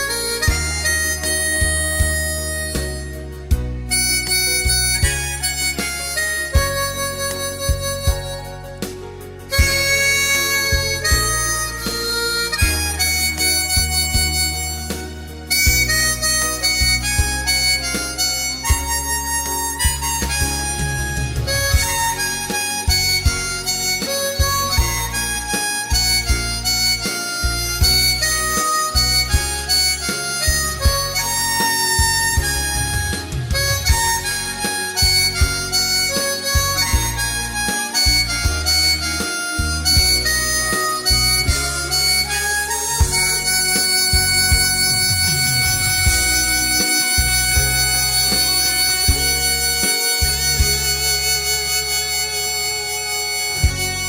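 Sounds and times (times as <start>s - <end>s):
backing track with bass and beat: 0.0s - 54.0s
harmonica playing a pop ballad: 0.0s - 54.0s.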